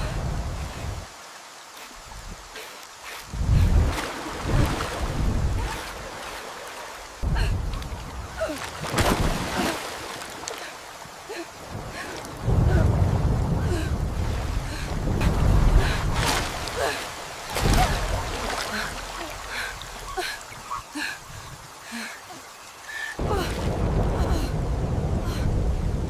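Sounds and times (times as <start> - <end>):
heavy rain falling: 0.0 - 26.0
thunder rumbling: 11.6 - 19.0, 23.2 - 26.0.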